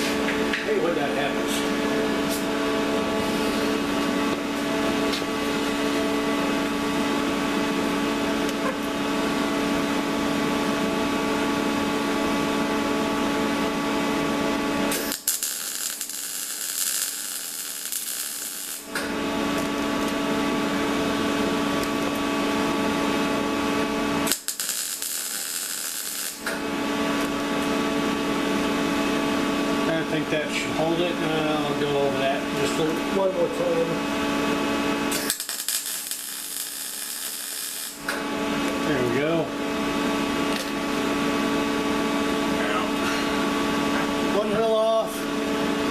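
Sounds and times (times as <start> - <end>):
steady electrical hum: 0.0 - 45.9
welding arc crackling hiss: 14.9 - 20.3, 24.1 - 27.7, 35.0 - 38.2.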